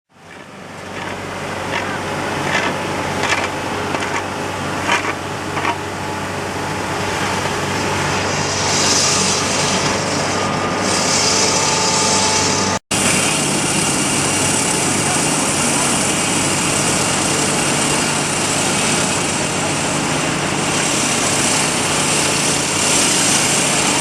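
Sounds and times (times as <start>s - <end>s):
diesel engine running: 0.1s - 24.0s
strong hiss: 7.8s - 10.2s.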